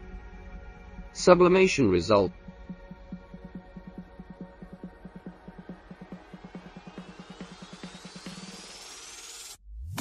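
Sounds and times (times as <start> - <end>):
pulsing bass line: 0.0 - 9.5
rising sweep tone: 2.2 - 9.6.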